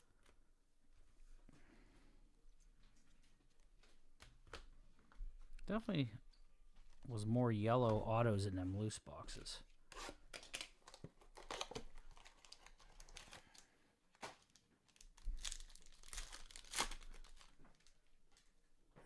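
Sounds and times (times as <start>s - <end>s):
card pack wrappers tearing: 10.4s - 13.6s, 14.2s - 17.9s.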